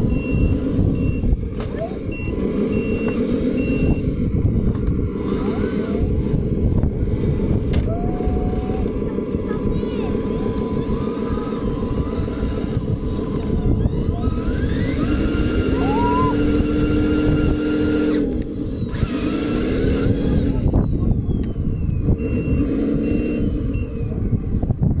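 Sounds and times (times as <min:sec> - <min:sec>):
short beeps: 0:00.0 - 0:01.3, 0:02.1 - 0:04.1, 0:22.2 - 0:24.1
electric motors grinding whine: 0:00.0 - 0:24.9.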